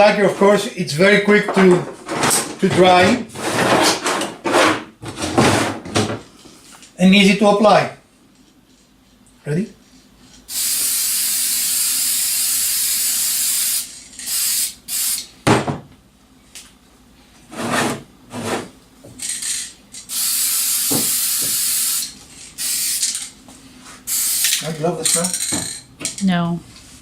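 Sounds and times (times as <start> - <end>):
aerosol spray can hissing: 10.5 - 15.2, 20.1 - 23.1, 24.1 - 24.6.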